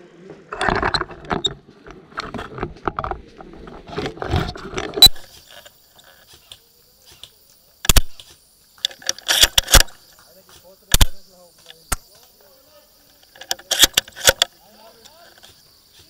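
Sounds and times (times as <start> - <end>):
sharp loud click: 7.2 - 10.0, 10.9 - 12.0, 13.4 - 14.5
mechanical clicking and rattling: 8.8 - 10.0, 13.3 - 14.5.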